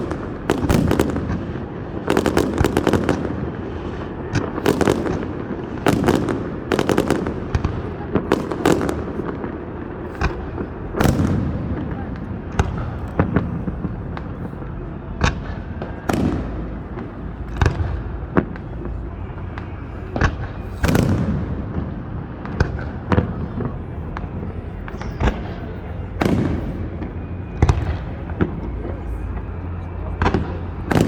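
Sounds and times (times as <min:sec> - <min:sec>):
fireworks bangs and booms: 0:00.0 - 0:31.0
low background rumble: 0:00.0 - 0:31.0.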